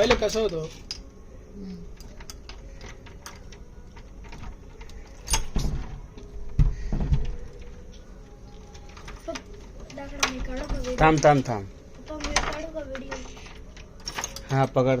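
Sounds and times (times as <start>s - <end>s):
key rattling in door lock: 1.9s - 6.3s, 8.5s - 14.9s.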